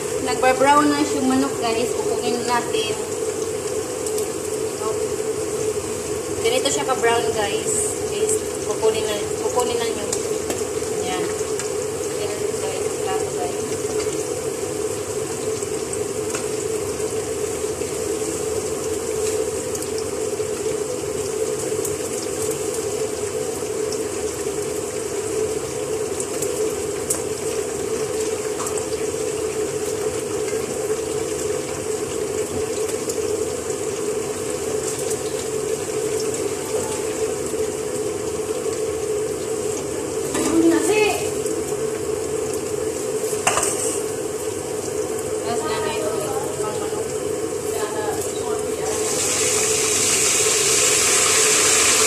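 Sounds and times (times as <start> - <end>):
onions sizzling in oil: 0.0 - 52.0.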